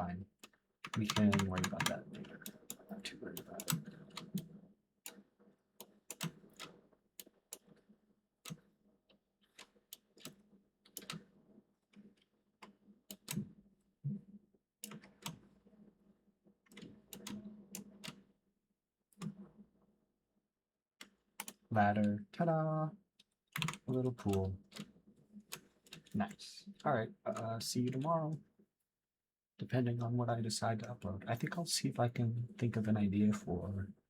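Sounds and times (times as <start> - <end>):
keyboard keys tapping: 0.9 - 4.5.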